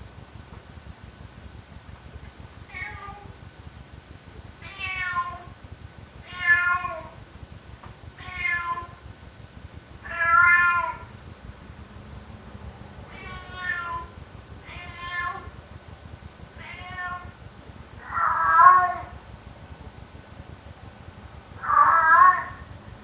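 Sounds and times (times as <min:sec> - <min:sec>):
cat meowing: 0:04.6 - 0:05.5, 0:06.2 - 0:07.2, 0:08.2 - 0:09.0, 0:10.0 - 0:11.1, 0:13.1 - 0:15.5, 0:16.6 - 0:17.3, 0:18.0 - 0:19.1, 0:21.6 - 0:22.7.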